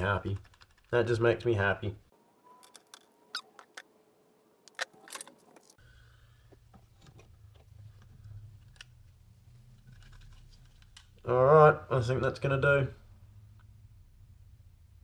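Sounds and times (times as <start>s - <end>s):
plastic and metal parts clicking: 4.7s - 5.8s.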